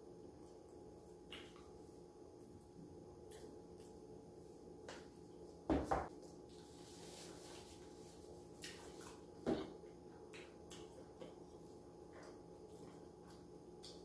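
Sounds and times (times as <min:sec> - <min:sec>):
soft rustle: 0:06.2 - 0:08.4.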